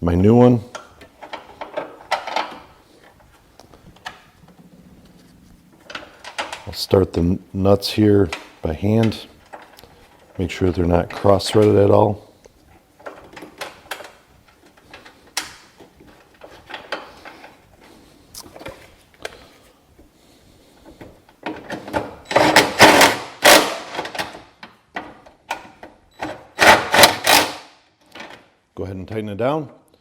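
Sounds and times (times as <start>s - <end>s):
impact driver rattling: 21.5s - 24.5s, 26.3s - 27.8s.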